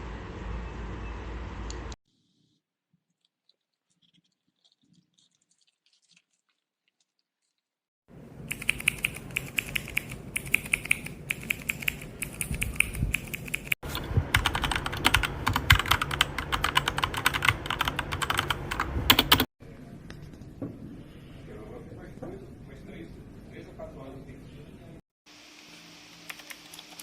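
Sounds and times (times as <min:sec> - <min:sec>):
fast typing on mechanical keyboard: 0:08.5 - 0:19.5.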